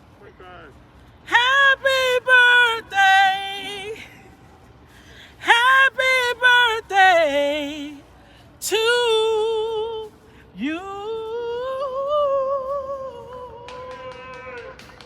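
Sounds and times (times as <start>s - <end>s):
woman singing unaccompanied: 1.3s - 4.5s, 5.3s - 14.0s.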